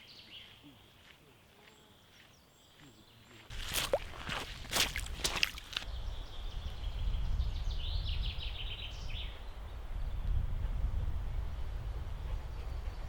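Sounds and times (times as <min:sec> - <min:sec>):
wind buffeting microphone: 0:04.4 - 0:13.0.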